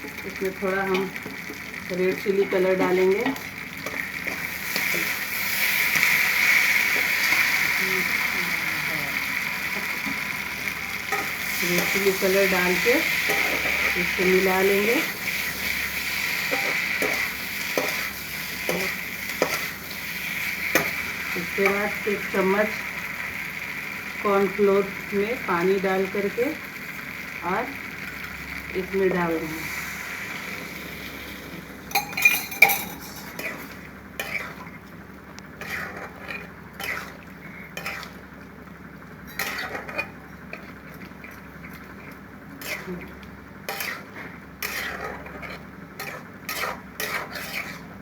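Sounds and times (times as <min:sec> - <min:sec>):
food sizzling in a pan: 0:00.0 - 0:48.0
metal spoon scraping a pan: 0:11.1 - 0:19.9, 0:31.9 - 0:34.8, 0:35.6 - 0:38.2, 0:39.3 - 0:43.1, 0:43.7 - 0:48.0
spoon scraping and knocking pan: 0:16.5 - 0:19.7, 0:43.7 - 0:47.9.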